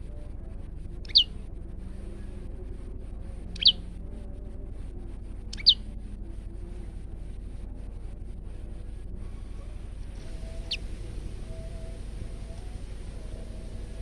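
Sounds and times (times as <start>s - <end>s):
steady low hum: 0.0s - 14.0s
bird calls sweeping downward: 1.1s - 1.3s, 3.6s - 3.8s, 5.5s - 5.8s.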